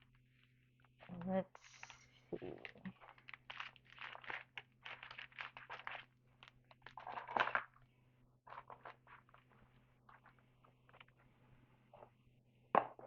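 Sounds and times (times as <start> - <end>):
plastic wrapper crinkling: 1.7 - 7.8.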